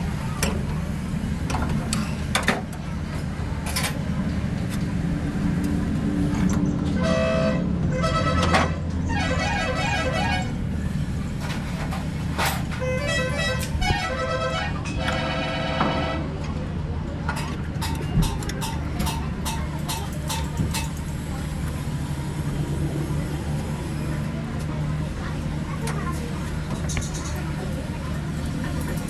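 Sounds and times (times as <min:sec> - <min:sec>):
low engine rumble: 0:00.0 - 0:29.0
vehicle horn blasts: 0:07.0 - 0:10.6, 0:12.8 - 0:16.4.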